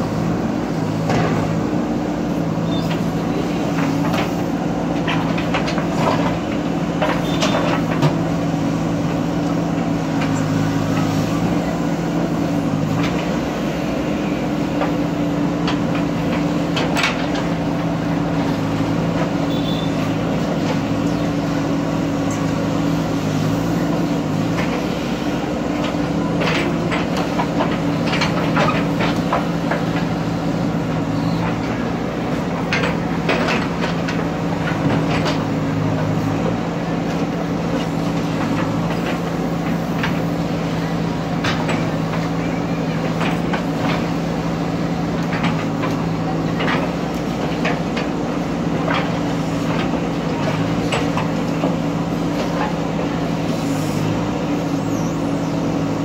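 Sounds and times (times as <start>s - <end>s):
diesel engine under load: 0.0s - 56.0s.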